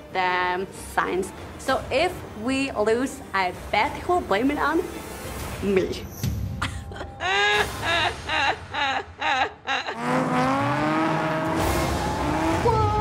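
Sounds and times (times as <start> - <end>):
car engine revving: 10.0 - 13.0
tire noise: 10.0 - 13.0.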